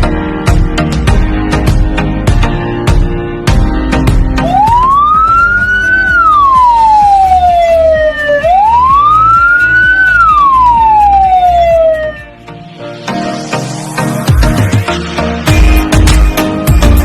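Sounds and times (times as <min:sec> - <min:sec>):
ambulance siren wailing: 0:04.4 - 0:12.4.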